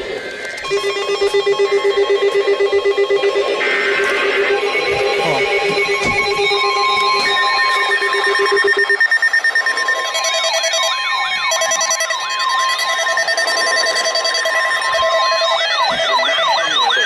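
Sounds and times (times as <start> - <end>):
fast beeping: 0.0 - 17.0
sweeping up-and-down tones: 0.0 - 17.0.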